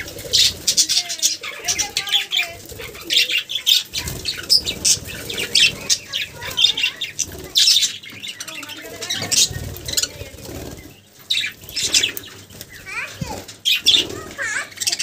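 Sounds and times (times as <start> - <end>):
bird wings fluttering: 0.0 - 7.7, 9.0 - 14.6
bird chirps and squawks: 0.0 - 15.0.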